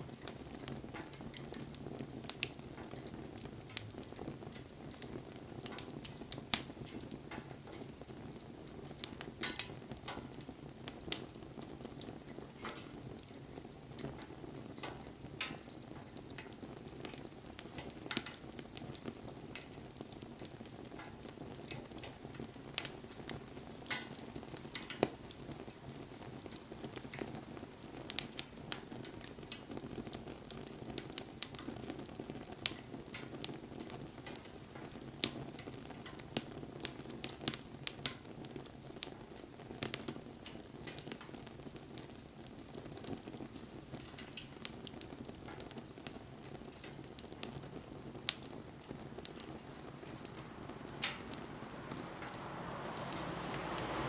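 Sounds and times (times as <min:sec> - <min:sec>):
bonfire crackling and popping: 0:00.0 - 0:54.0
low rush of burning: 0:46.7 - 0:54.0.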